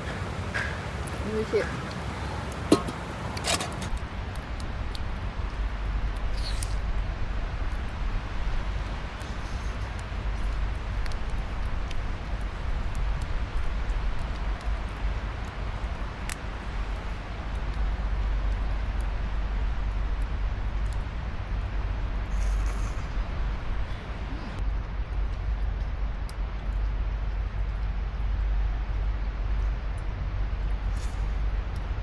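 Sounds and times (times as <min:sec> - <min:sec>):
strong wind buffeting microphone: 0:00.0 - 0:22.3.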